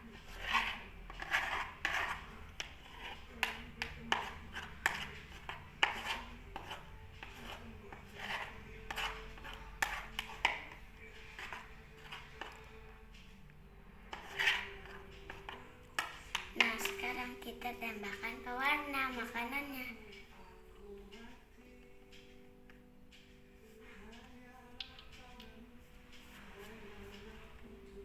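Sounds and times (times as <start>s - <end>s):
utensil scraping bowl: 0.0s - 13.0s, 14.0s - 19.4s.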